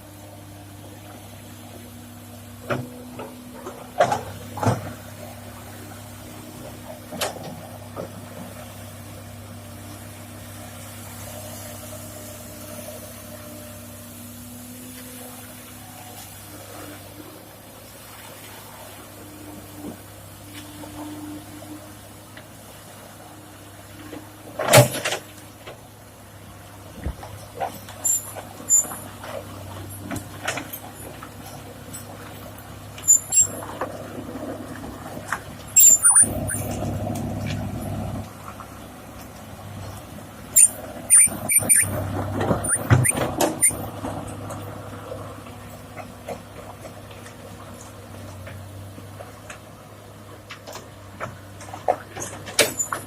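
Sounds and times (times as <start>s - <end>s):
diesel engine humming: 25.3s - 52.5s
rock scraping metal squeals: 33.0s - 33.8s, 35.7s - 38.0s, 40.5s - 43.9s.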